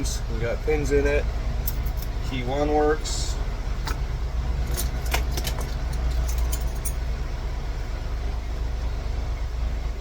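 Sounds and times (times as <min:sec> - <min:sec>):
engine idling rumble: 0:00.0 - 0:10.0
keys clicking and jingling: 0:04.6 - 0:07.0.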